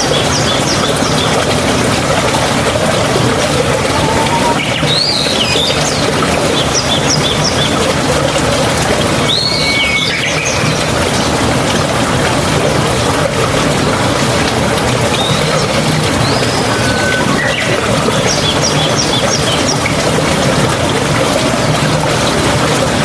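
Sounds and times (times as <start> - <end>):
birds chirping: 0.0 - 8.4, 9.1 - 11.4, 15.0 - 20.2
rushing water: 0.0 - 23.0.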